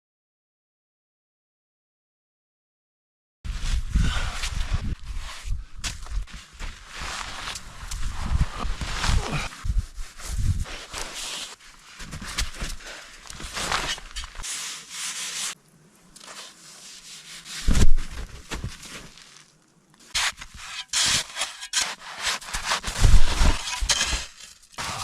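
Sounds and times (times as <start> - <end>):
tool scraping packed snow: 3.6 - 15.6, 20.1 - 25.0.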